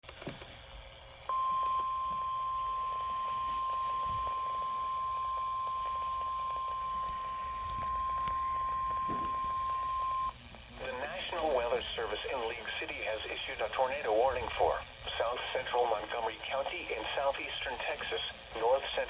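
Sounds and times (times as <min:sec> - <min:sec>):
steady high alarm beep: 0:01.3 - 0:10.3
faint radio hiss: 0:09.3 - 0:19.0.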